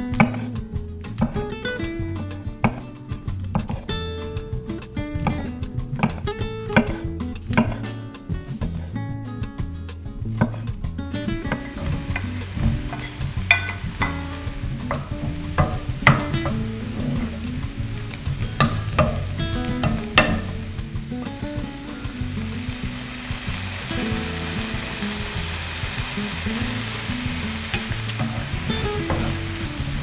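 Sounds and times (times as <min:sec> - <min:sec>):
background music with low bass: 0:00.0 - 0:30.0
food sizzling in a frying pan: 0:11.4 - 0:30.0
utensil scraping a pan: 0:11.5 - 0:25.1, 0:26.1 - 0:30.0.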